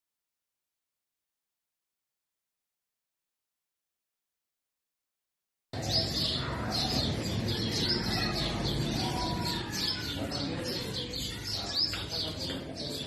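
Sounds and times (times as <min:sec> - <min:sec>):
faint birds: 0:05.8 - 0:13.0.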